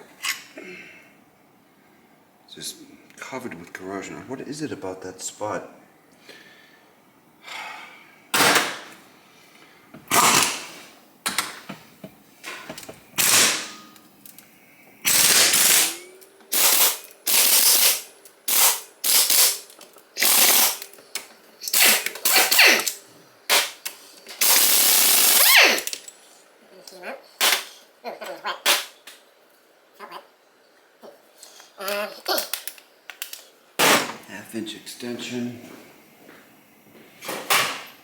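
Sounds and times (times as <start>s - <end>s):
impact wrench rattling: 10.1s - 10.7s, 12.6s - 13.8s, 15.1s - 21.0s, 24.4s - 26.1s.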